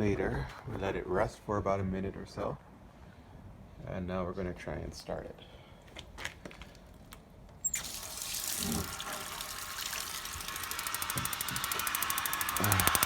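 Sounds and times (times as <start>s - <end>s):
water tap running: 7.7s - 13.0s
gas heater igniter ticking: 9.3s - 13.0s.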